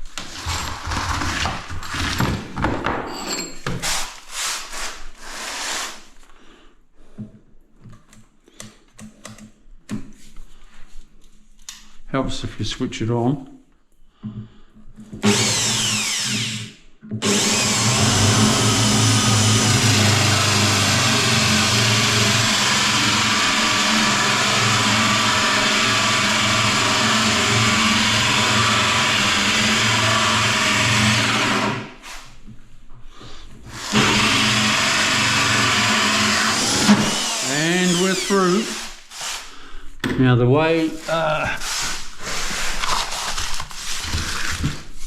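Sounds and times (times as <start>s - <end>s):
electric drill with hole saw cutting wood: 15.2s - 32.2s, 33.7s - 39.5s.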